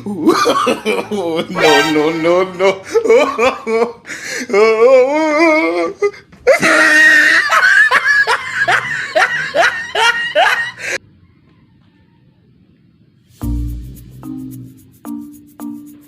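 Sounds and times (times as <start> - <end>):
person laughing loudly: 0.0 - 11.0.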